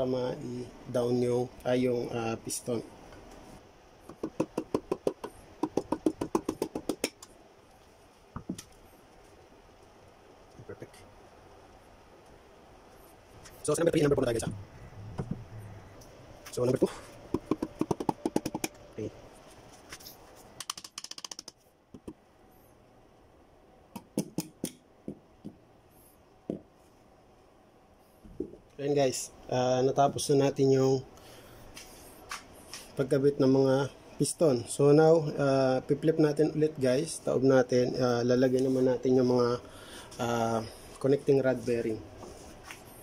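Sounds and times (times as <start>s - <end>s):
hammer handle tapping on piston: 4.1s - 7.3s, 17.3s - 18.8s.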